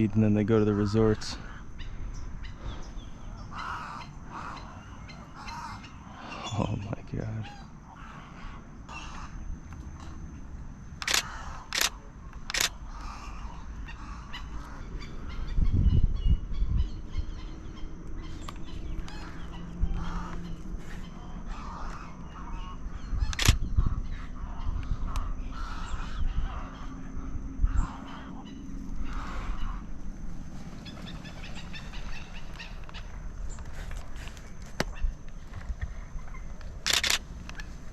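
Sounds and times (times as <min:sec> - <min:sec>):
waterbirds squawking and honking: 0:00.5 - 0:09.4, 0:12.5 - 0:15.6, 0:17.2 - 0:27.0
sharp clicks: 0:11.0 - 0:12.8, 0:23.3 - 0:23.6, 0:36.6 - 0:37.7.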